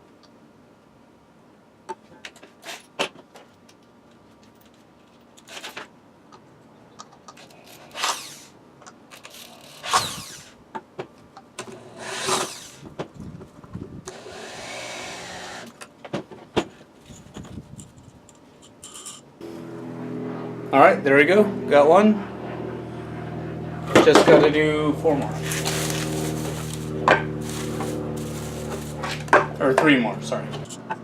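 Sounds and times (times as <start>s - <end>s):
power drill spinning: 7.7s - 8.6s, 9.2s - 10.6s, 11.6s - 12.9s, 14.1s - 15.8s, 25.1s - 29.6s
metal parts clicking and knocking: 17.1s - 19.3s.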